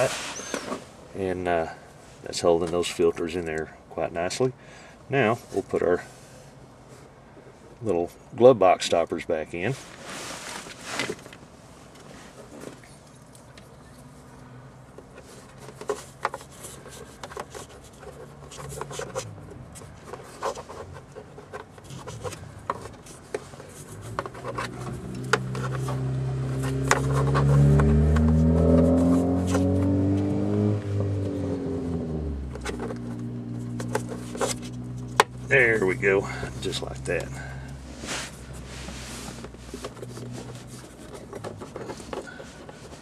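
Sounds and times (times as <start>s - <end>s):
plastic clicks and scrapes: 15.0s - 29.9s, 32.5s - 35.4s, 39.2s - 43.0s
vehicle driving past: 25.0s - 33.8s.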